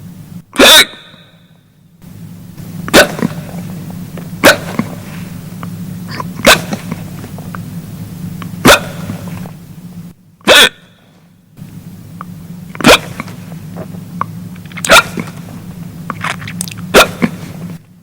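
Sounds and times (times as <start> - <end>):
low background hum: 0.0 - 18.0
person hiccuping: 0.5 - 1.5, 2.9 - 3.7, 4.4 - 5.2, 6.1 - 7.1, 8.6 - 9.4, 10.4 - 11.1, 12.7 - 13.4, 14.8 - 15.5, 16.6 - 17.7.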